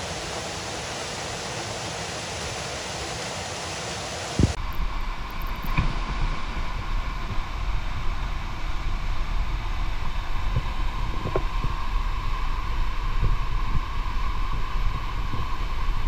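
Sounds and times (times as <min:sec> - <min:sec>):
wind buffeting microphone: 0:04.2 - 0:16.0.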